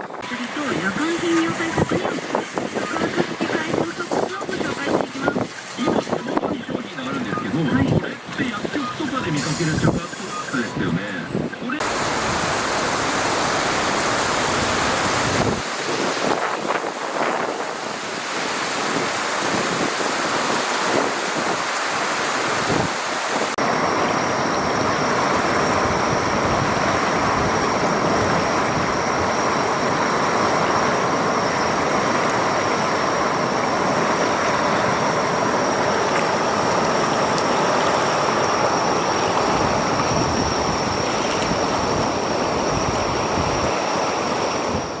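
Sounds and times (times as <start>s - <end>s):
heavy rain: 11.7s - 45.0s.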